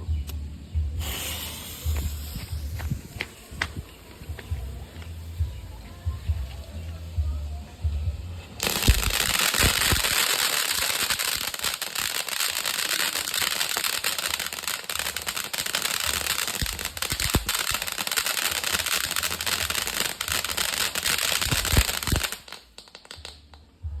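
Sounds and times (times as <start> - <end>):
loud firework pops: 1.0 - 4.6, 8.6 - 23.6
firework crackling: 1.0 - 5.6, 8.1 - 23.6.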